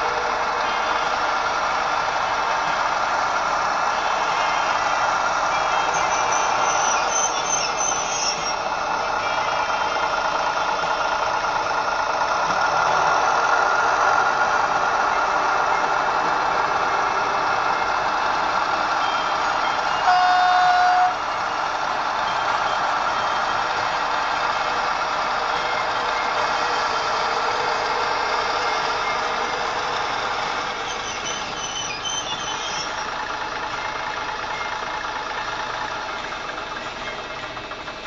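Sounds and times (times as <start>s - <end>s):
model diesel engine sound: 0.0s - 38.0s.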